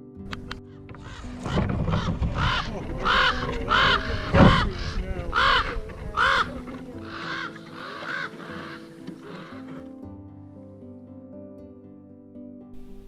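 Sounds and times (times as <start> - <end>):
soft background music: 0.0 - 13.0
bird rasping calls: 0.7 - 9.9.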